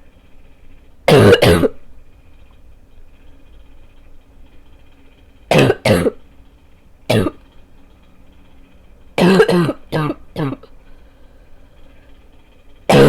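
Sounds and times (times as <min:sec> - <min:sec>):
person coughing harshly: 0:01.1 - 0:01.8, 0:05.5 - 0:06.2, 0:07.1 - 0:07.4, 0:09.2 - 0:10.7.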